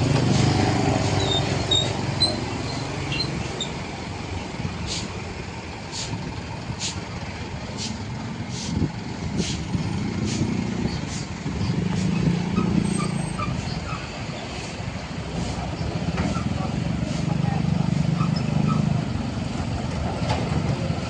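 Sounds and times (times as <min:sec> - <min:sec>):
heavy vehicle low drone: 0:00.0 - 0:21.0
road traffic: 0:00.0 - 0:21.0.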